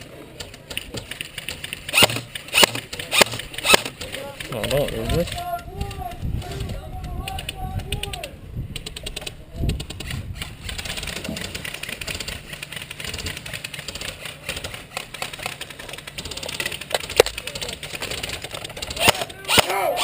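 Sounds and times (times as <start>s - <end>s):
airsoft guns firing full auto: 0.4s - 5.5s, 8.8s - 20.0s
sharp crack: 0.4s - 5.5s, 8.8s - 20.0s.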